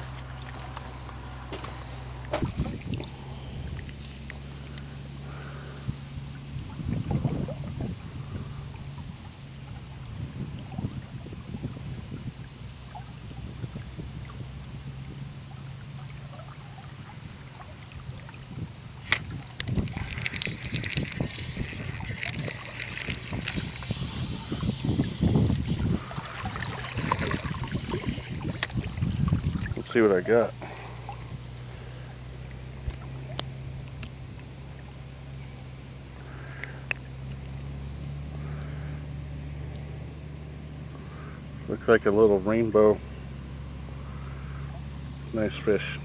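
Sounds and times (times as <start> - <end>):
wind on microphone: 0.0 - 4.0, 5.3 - 15.6, 16.2 - 30.3
river water running: 0.0 - 46.0.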